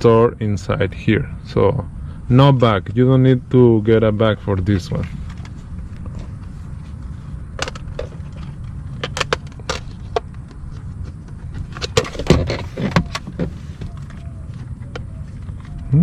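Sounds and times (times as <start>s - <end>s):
low background rumble: 0.0s - 16.0s
plastic parts clicking and knocking: 7.6s - 10.6s, 11.2s - 14.2s.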